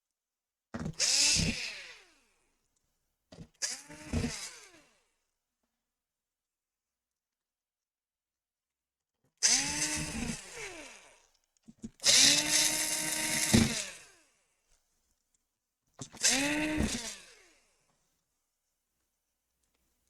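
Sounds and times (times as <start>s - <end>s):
handheld power tool motor grinding: 0.8s - 2.3s, 3.4s - 5.0s, 9.4s - 14.4s, 16.0s - 17.8s.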